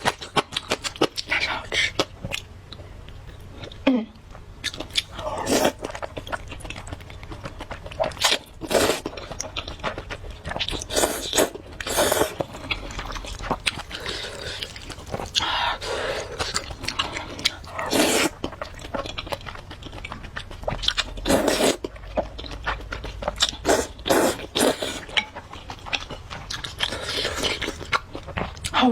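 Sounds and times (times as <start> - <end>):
person biting and chewing food: 7.6 - 19.4.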